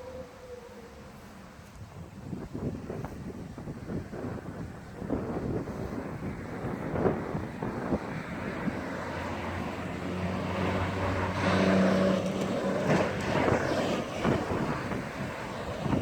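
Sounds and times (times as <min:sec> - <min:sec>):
wind rumbling on microphone: 0:00.0 - 0:16.0
vehicle engine passing: 0:06.3 - 0:16.0.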